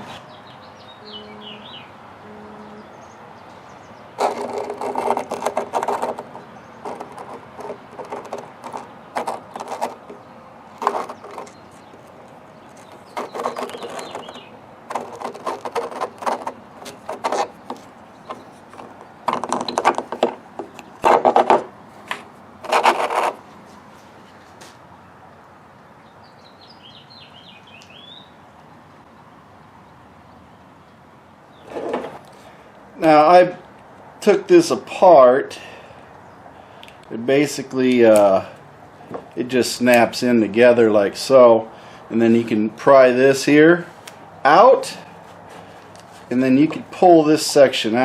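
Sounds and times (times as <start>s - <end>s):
small hard parts clicking and rattling: 4.2s - 21.7s.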